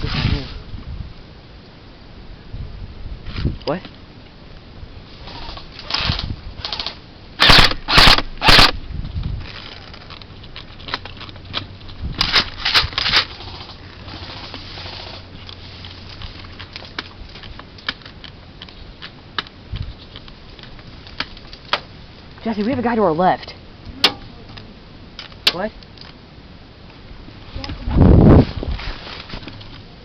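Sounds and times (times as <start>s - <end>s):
airsoft gun shots: 7.4s - 8.8s
gear clicking and rattling: 9.4s - 21.8s.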